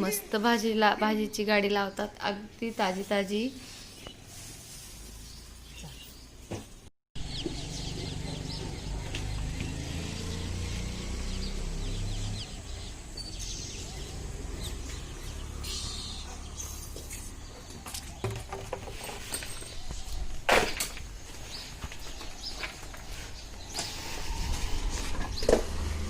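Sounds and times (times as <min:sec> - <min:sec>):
birds chirping and calling: 0:05.2 - 0:06.3, 0:07.2 - 0:25.6.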